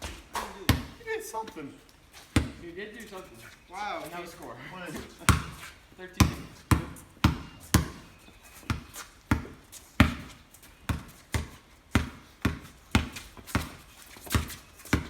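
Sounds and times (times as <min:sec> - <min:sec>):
basketball dribbling on wet court: 0:00.0 - 0:01.0, 0:02.3 - 0:02.6, 0:05.0 - 0:15.0.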